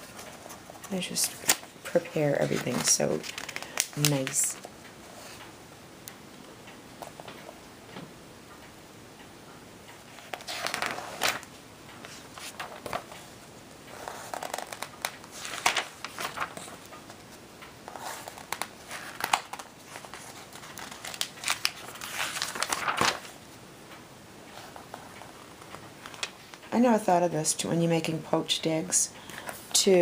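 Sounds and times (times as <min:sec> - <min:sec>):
magazine pages rustling: 0:00.0 - 0:05.3, 0:10.0 - 0:23.4, 0:24.5 - 0:26.7.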